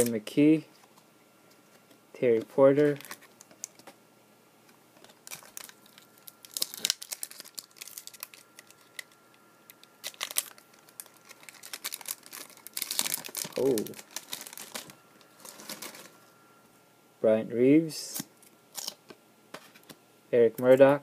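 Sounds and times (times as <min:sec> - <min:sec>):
foil wrapper crinkling and tearing: 0:02.8 - 0:03.9, 0:05.0 - 0:16.2, 0:18.1 - 0:19.0.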